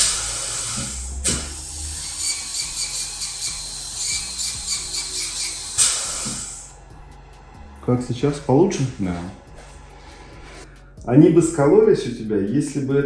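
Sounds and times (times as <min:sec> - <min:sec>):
dental drill whining: 0:00.0 - 0:06.7.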